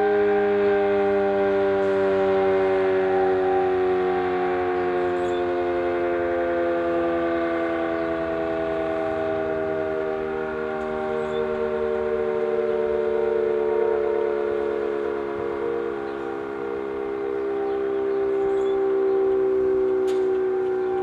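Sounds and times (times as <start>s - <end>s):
tornado siren two-tone chord: 0.0s - 21.0s.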